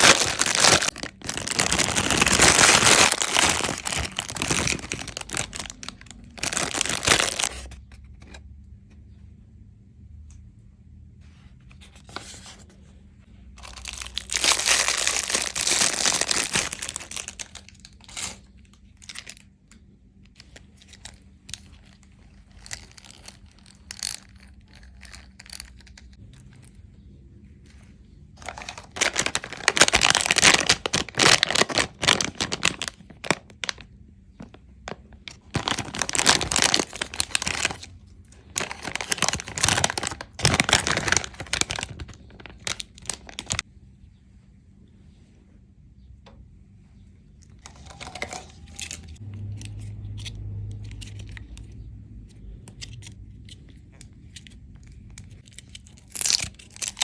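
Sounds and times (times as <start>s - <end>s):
candy wrapper tearing and crinkling: 0.0s - 7.7s, 13.6s - 19.5s, 20.8s - 26.5s, 28.4s - 34.6s, 35.2s - 43.7s, 47.6s - 51.7s, 52.6s - 57.0s.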